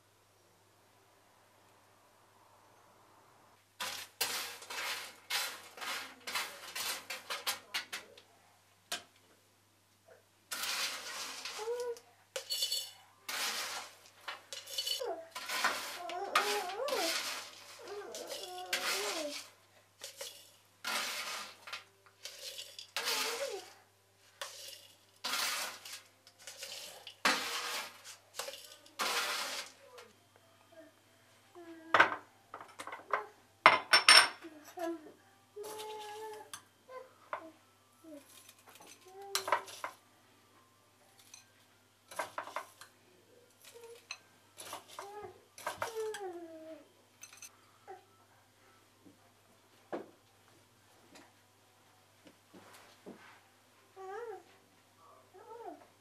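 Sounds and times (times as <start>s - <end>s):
utensils clinking against dishes: 3.8s - 8.1s, 10.5s - 23.8s, 24.4s - 30.0s, 32.0s - 34.4s, 38.2s - 40.0s, 41.1s - 46.4s, 47.2s - 47.5s.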